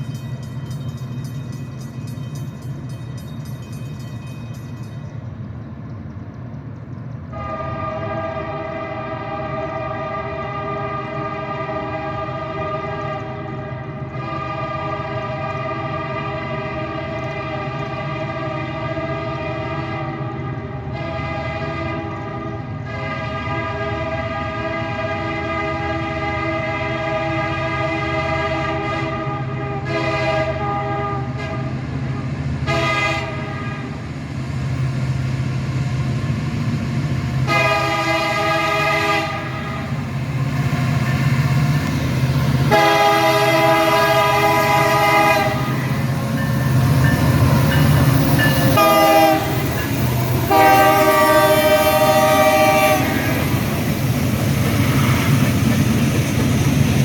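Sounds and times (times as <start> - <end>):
passing train rumble: 0.0 - 57.0
locomotive air horn blasts: 7.3 - 31.8, 32.6 - 34.0, 37.4 - 40.0, 42.6 - 53.9.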